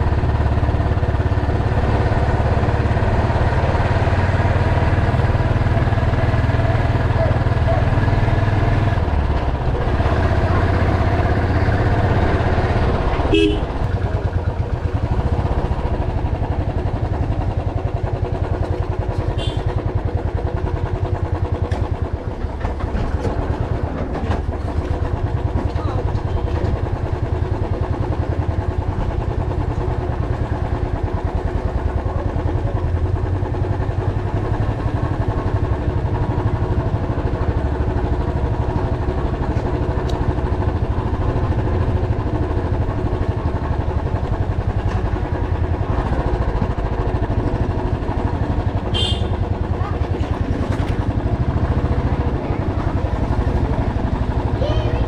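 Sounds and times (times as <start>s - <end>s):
motorcycle engine running: 0.0s - 55.0s.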